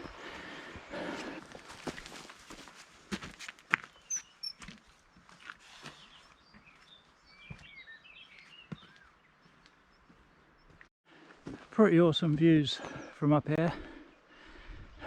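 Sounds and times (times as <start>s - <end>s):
footsteps on path: 0.0s - 14.0s
small birds chirping: 3.7s - 10.9s, 12.5s - 15.0s.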